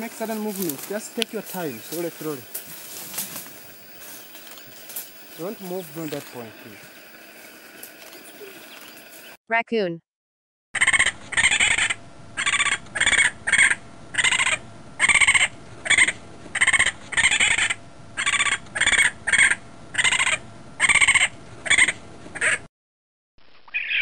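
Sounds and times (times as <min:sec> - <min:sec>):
raccoon squealing calls: 0:10.8 - 0:22.6, 0:23.7 - 0:24.0.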